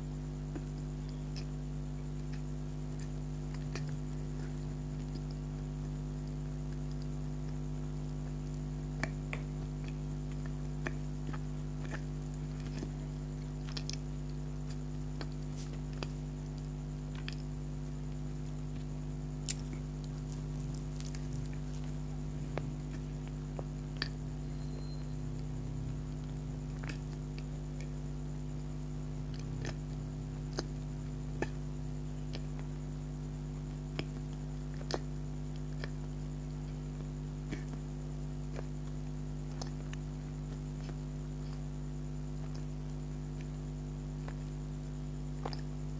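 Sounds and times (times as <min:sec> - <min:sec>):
steady electrical hum: 0:00.0 - 0:45.9
person chewing: 0:09.0 - 0:17.6, 0:18.2 - 0:28.0, 0:34.0 - 0:36.0.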